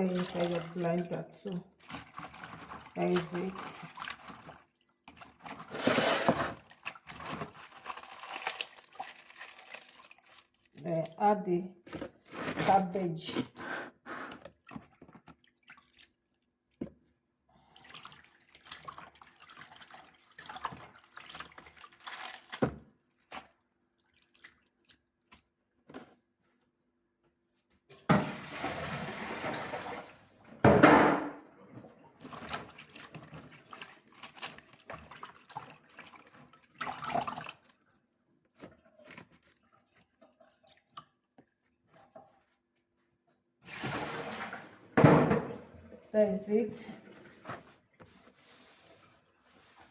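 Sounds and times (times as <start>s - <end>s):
water dripping and splashing: 0.0s - 5.6s, 6.6s - 11.2s, 14.5s - 16.8s, 17.6s - 25.5s, 31.8s - 42.4s.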